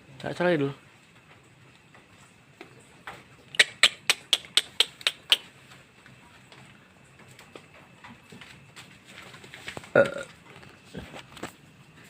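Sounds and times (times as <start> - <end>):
sharp clicks: 3.5 - 5.5.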